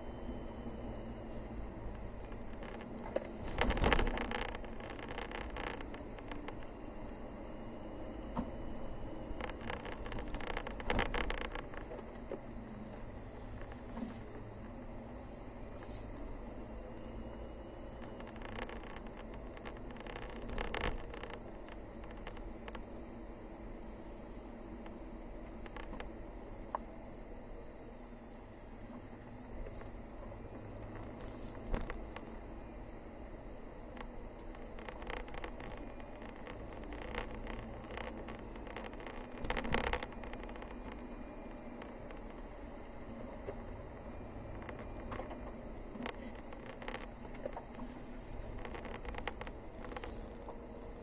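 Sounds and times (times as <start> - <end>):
crackling: 0.0 - 14.9, 15.8 - 23.1, 24.8 - 26.8, 33.5 - 51.0
car engine and tyres rumbling: 0.0 - 51.0
small clicks and rattles: 1.9 - 6.8, 9.3 - 14.2, 17.9 - 22.9, 24.8 - 26.8, 30.5 - 32.4, 33.9 - 43.6, 44.5 - 50.9.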